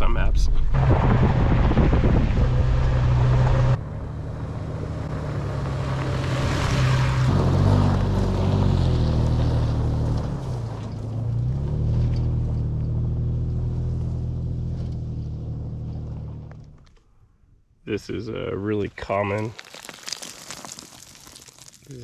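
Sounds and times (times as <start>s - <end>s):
loud rushing noise: 0.7s - 3.8s
car engine running: 0.8s - 6.5s.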